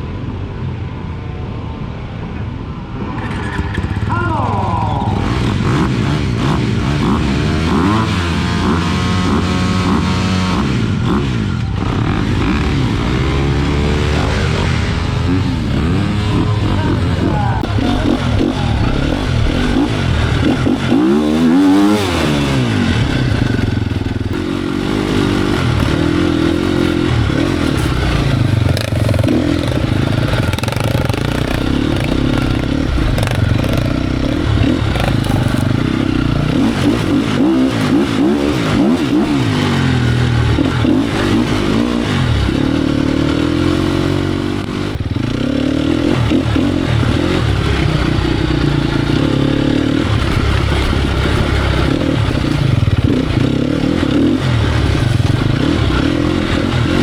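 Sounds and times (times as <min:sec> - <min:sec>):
motorcycle engine revving: 0:03.0 - 0:57.0
knocks and clatter: 0:17.6 - 0:39.6.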